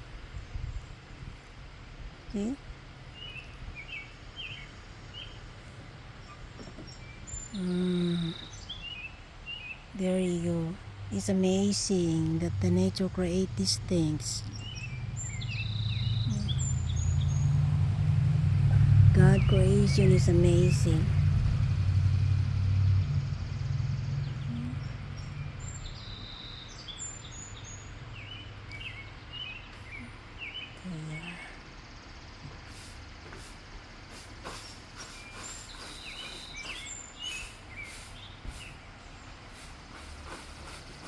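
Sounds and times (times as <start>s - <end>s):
small birds chirping: 0.0s - 21.7s, 23.2s - 41.0s
low rumble: 10.5s - 30.4s.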